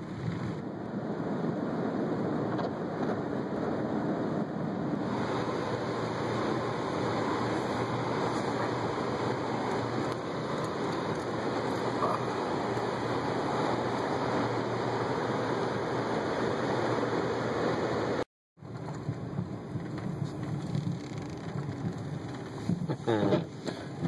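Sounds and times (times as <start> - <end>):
low engine rumble: 0.0 - 24.0
road and rain hiss inside vehicle: 0.0 - 24.0.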